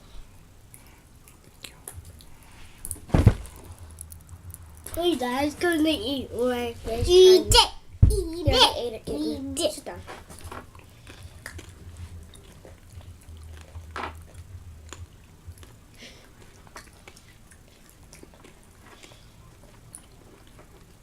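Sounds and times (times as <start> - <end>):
person chewing cookie: 0.6 - 5.0, 10.3 - 21.0
popping candy crackles: 2.8 - 5.8.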